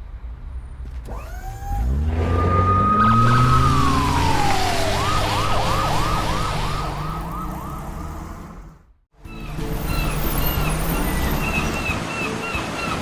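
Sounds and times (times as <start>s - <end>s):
police siren wailing and warbling: 1.8s - 8.4s.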